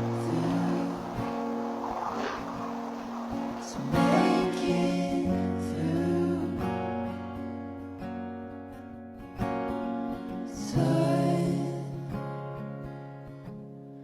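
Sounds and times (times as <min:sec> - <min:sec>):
strummed acoustic guitar: 0:00.0 - 0:14.0.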